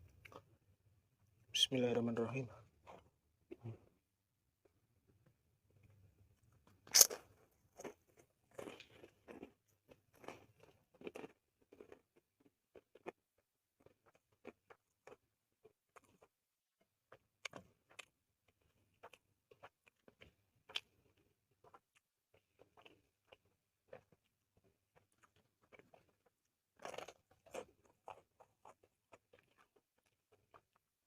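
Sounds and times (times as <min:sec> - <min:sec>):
crunchy bite: 0:06.8 - 0:09.5
wet chewing: 0:13.8 - 0:30.9.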